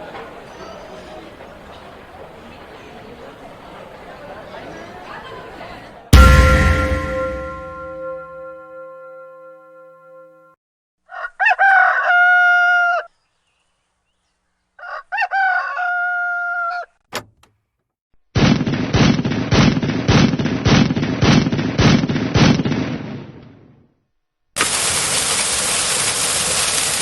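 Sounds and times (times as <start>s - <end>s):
rooster crowing: 11.1s - 13.0s.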